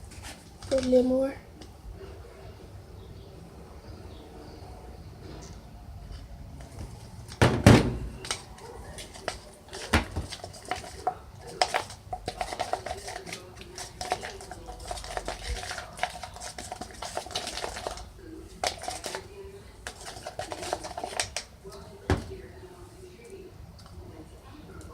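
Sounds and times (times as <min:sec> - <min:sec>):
utensil scraping a bowl: 0:08.2 - 0:21.8.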